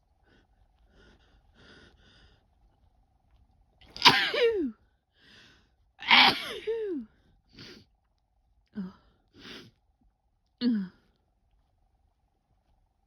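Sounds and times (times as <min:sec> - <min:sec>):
woman sneezing: 0:04.0 - 0:04.7, 0:06.0 - 0:06.9.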